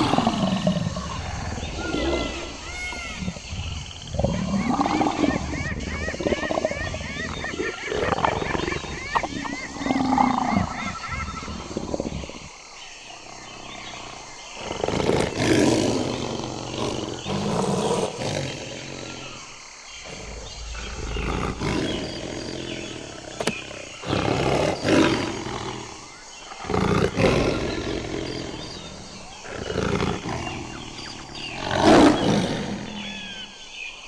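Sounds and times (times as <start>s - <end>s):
tiger roaring: 13.2s - 33.6s.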